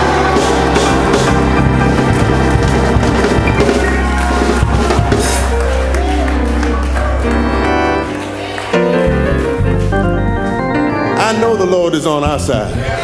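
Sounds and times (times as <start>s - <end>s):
drum kit: 0.0s - 6.8s
bass line: 0.0s - 8.1s, 8.8s - 11.6s
organ chords: 0.0s - 13.0s
person preaching: 11.2s - 12.9s.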